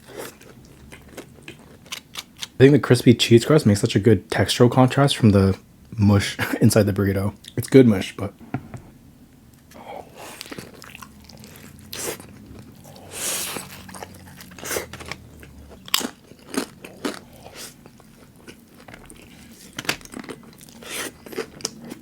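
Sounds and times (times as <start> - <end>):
chewing crunchy food: 0.0 - 2.6, 9.6 - 22.0.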